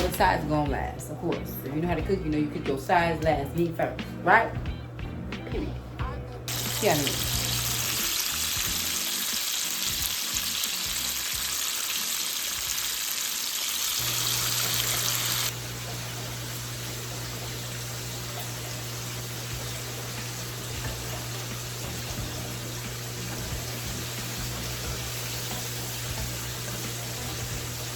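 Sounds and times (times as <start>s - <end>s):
chicken sizzling in hot grease: 6.5s - 27.9s.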